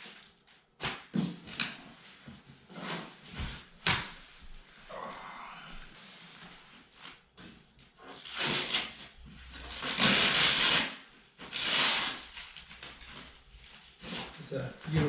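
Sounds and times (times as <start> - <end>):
packaging rustling and scraping: 8.1 - 15.0.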